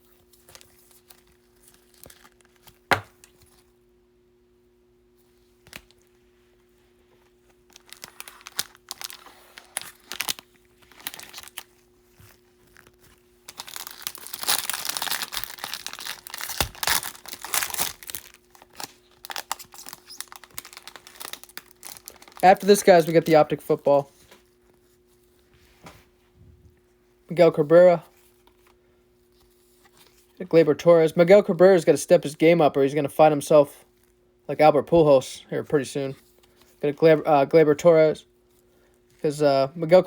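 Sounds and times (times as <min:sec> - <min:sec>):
faint steady hum: 0:00.0 - 0:40.0
foil wrapper crinkling and tearing: 0:00.3 - 0:03.7, 0:07.5 - 0:23.8.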